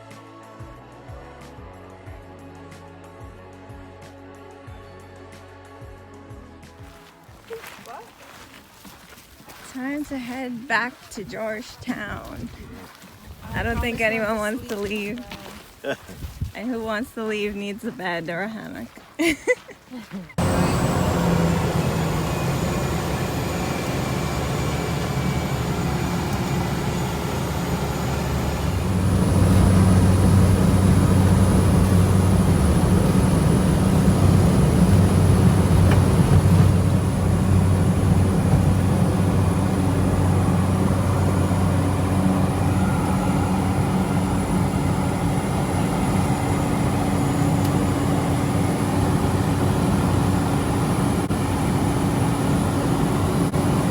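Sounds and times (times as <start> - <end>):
propeller aircraft engine droning: 20.3 - 53.9.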